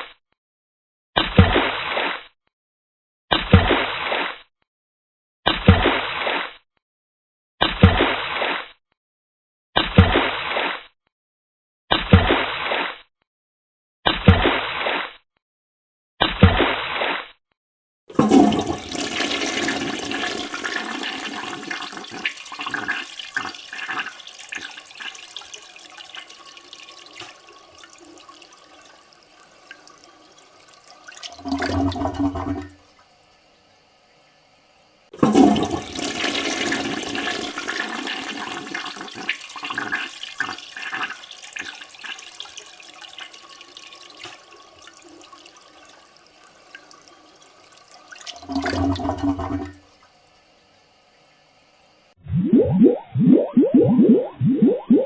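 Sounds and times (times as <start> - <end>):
toilet flushing: 18.1 - 52.2
brief low hum: 52.2 - 55.0.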